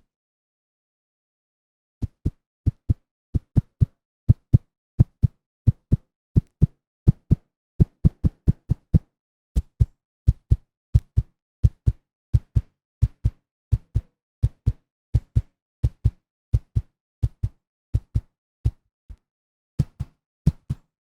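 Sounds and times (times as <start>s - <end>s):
heartbeat thumps: 2.0s - 9.0s.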